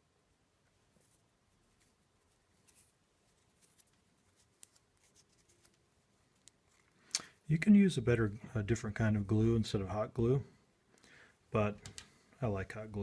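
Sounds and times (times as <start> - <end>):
faint clicks and scrapes: 0.6 - 7.2.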